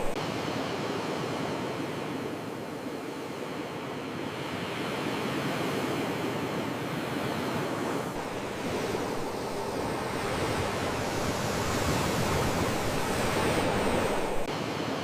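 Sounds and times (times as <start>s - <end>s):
sea waves surf rushing: 7.5s - 14.5s.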